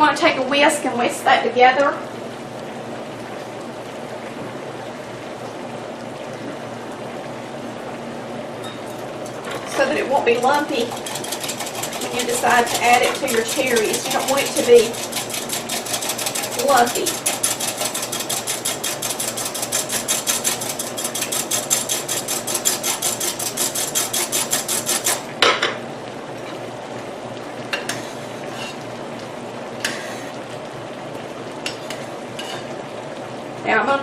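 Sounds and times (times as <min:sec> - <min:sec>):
whisk beating against glass: 0:09.6 - 0:25.2.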